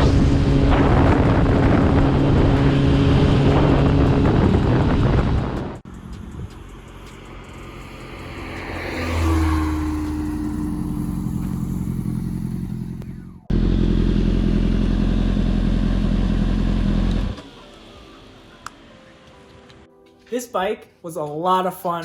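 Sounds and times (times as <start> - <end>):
motorcycle engine passing by: 0.0 - 17.4.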